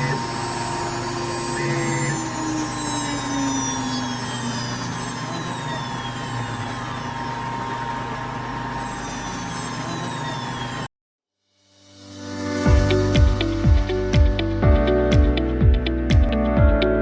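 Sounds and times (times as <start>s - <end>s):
cnc router running: 0.0s - 10.9s
high whines falling in pitch: 0.0s - 10.9s.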